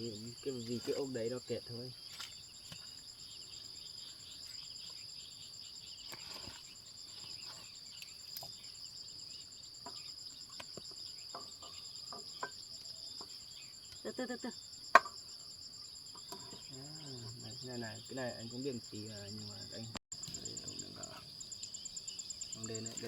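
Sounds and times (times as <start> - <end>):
insects chirping in a pulsing trill: 0.0 - 23.0.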